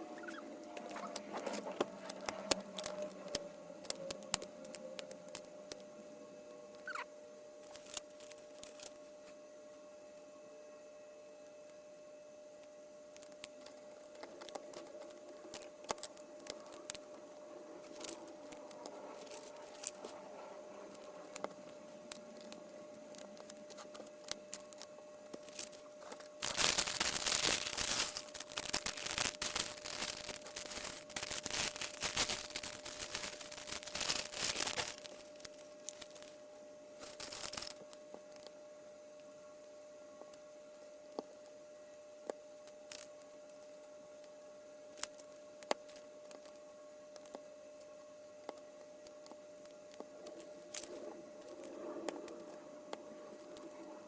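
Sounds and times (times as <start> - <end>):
plastic bag crinkling and tearing: 0.0 - 5.8, 6.8 - 7.0, 7.6 - 9.0, 13.2 - 36.4, 37.0 - 38.5.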